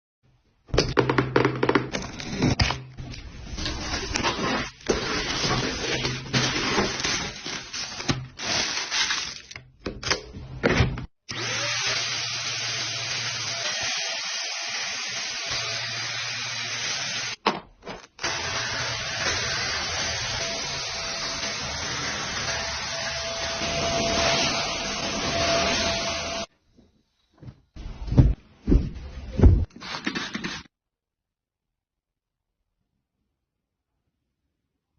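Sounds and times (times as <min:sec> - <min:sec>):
vacuum cleaner running: 0:11.3 - 0:17.4, 0:18.2 - 0:26.5.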